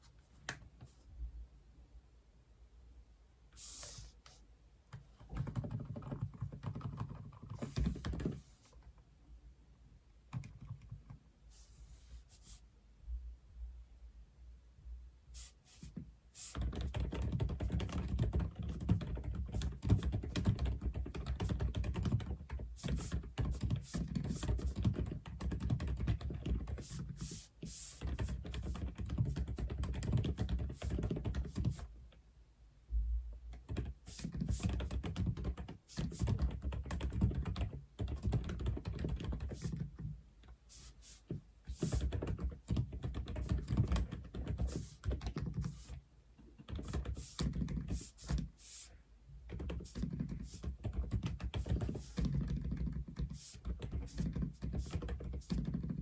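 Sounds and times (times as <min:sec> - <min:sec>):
typing on mechanical keyboard: 0:05.2 - 0:08.4, 0:10.3 - 0:11.2, 0:16.5 - 0:27.3, 0:27.9 - 0:31.9, 0:33.6 - 0:40.0, 0:41.7 - 0:46.0, 0:46.6 - 0:48.5, 0:49.5 - 0:56.0.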